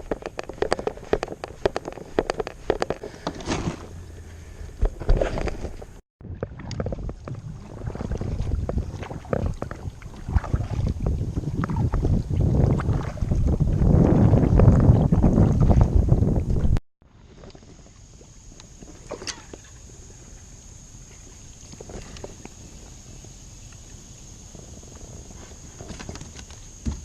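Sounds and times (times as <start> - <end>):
wind buffeting microphone: 4.8 - 16.8.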